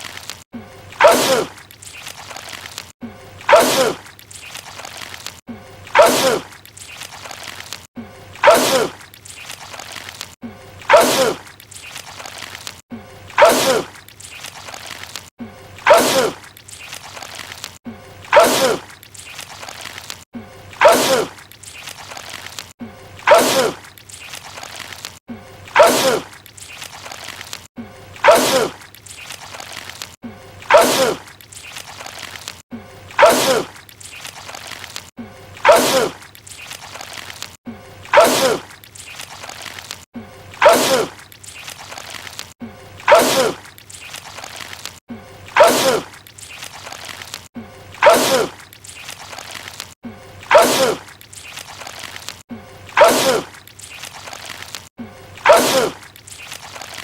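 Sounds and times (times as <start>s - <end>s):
man sneezing: 45.6s - 46.1s, 53.0s - 53.5s, 55.4s - 56.0s.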